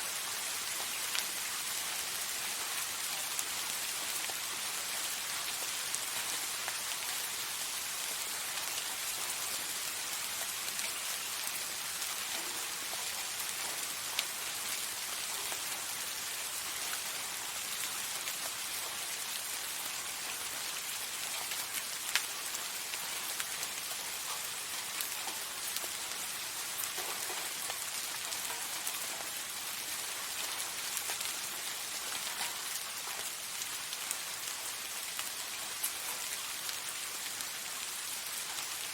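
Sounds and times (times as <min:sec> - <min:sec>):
soft rain hiss: 0:00.0 - 0:38.9
raindrop ticks: 0:10.1 - 0:16.0, 0:21.2 - 0:26.2, 0:26.8 - 0:38.8.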